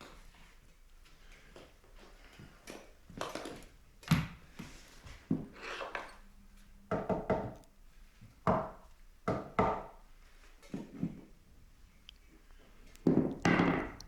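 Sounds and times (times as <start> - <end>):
wooden knocks and thumps: 13.0 - 14.0.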